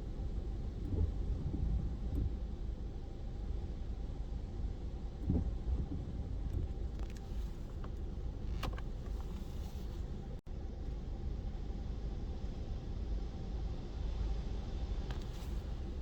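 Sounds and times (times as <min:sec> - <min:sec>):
wind rumble on microphone: 0:00.0 - 0:10.3.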